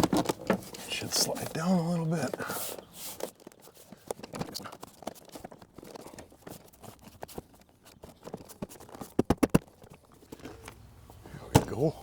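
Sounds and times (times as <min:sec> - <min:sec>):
plastic panel clicks and rubbing: 0:00.0 - 0:10.8
sharp knocks: 0:09.1 - 0:09.7.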